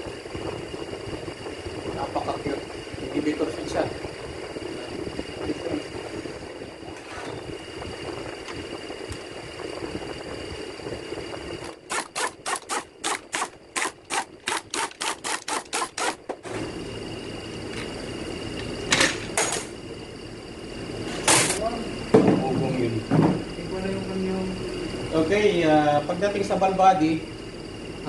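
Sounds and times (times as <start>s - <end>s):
steady hum with high whine: 0.0s - 28.0s
sharp clicks: 11.7s - 16.2s.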